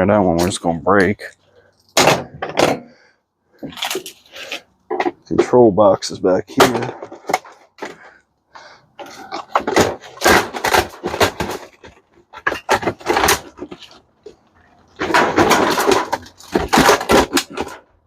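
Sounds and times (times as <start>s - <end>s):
dishwasher parts clattering: 15.0s - 17.8s.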